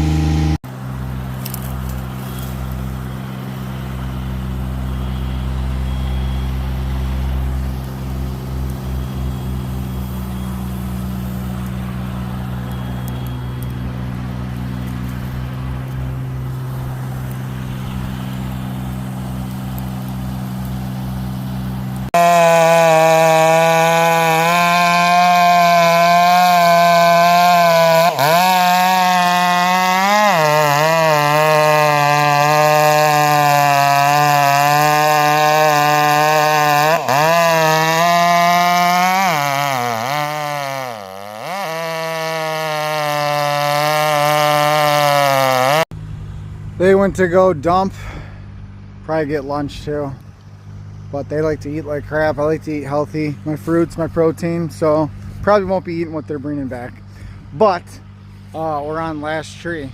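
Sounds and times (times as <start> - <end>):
chainsaw running at high revs: 0.0 - 45.9
engine idling: 45.9 - 59.9.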